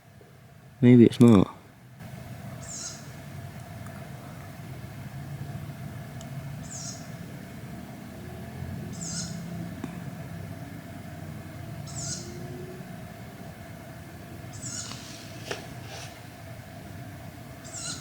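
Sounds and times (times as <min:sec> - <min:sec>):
night bird high-pitched call: 0:02.6 - 0:03.1, 0:06.6 - 0:07.1, 0:08.9 - 0:09.5, 0:11.8 - 0:12.4, 0:14.5 - 0:15.2, 0:17.6 - 0:18.0.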